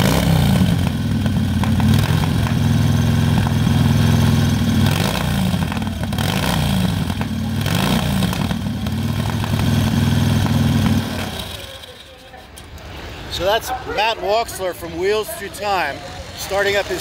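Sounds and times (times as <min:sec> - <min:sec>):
motorcycle engine revving: 0:00.0 - 0:12.2.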